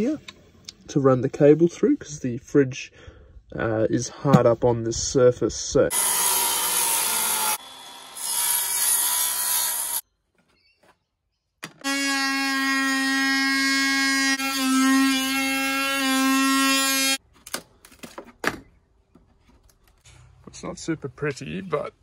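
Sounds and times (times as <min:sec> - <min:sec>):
power tool high whine: 0:05.9 - 0:10.0
power tool rasping cut in wood: 0:05.9 - 0:10.0, 0:11.8 - 0:17.2.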